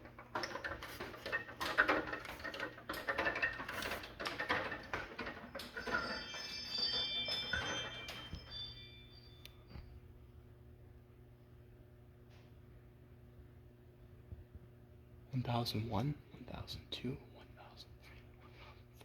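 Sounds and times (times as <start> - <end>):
ladder rattling and clattering: 0.0 - 8.6
thin high tones: 5.8 - 9.7.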